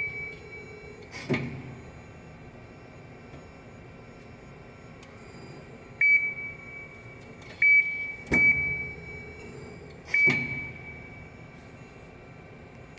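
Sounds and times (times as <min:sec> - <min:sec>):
press brake metallic clanks: 0:07.2 - 0:11.2.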